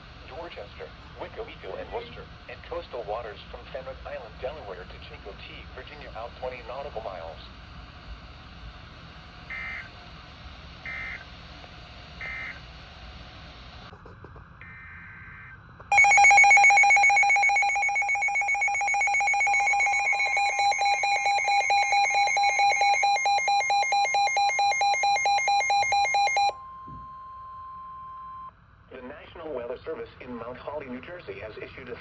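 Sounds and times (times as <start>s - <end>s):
rapidly pulsing alarm: 9.4s - 10.0s, 10.7s - 13.1s, 14.6s - 28.5s
steady warning alarm tone: 9.5s - 9.9s, 10.9s - 11.2s, 12.2s - 12.6s, 14.6s - 28.5s
data header burst: 15.9s - 26.5s.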